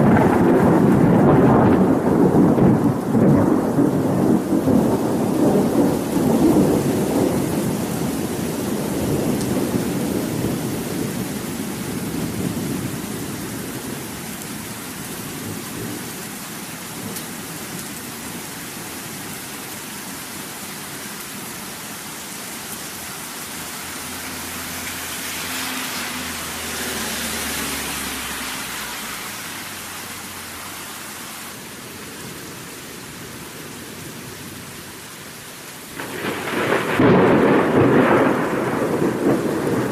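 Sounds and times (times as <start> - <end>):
thunder rolling: 0.0 - 14.0, 36.0 - 39.9
heavy rain: 0.0 - 39.9.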